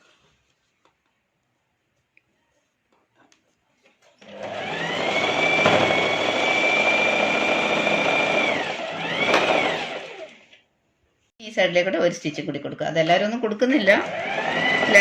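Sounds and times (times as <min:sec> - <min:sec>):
sewing machine motor whining: 0:04.2 - 0:10.5, 0:13.9 - 0:15.0.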